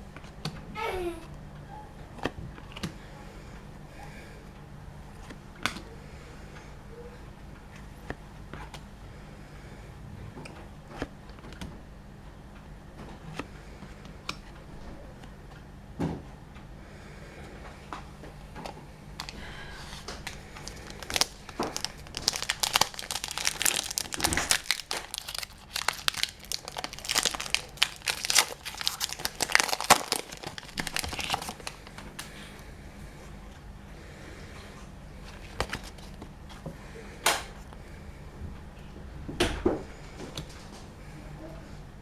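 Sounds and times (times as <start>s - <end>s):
wrapper tearing and crinkling: 19.2s - 32.3s, 35.3s - 36.2s.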